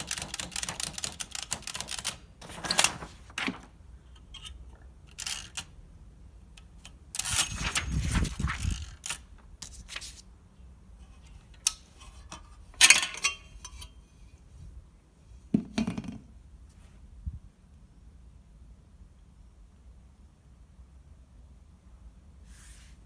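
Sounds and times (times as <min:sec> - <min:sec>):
typewriter metallic clicks and clatter: 0:00.0 - 0:03.6, 0:05.1 - 0:05.7, 0:06.8 - 0:09.8.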